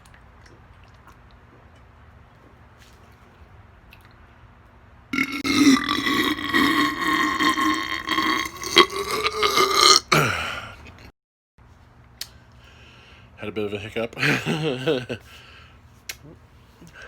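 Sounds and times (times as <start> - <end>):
man belching loudly: 5.2 - 10.4.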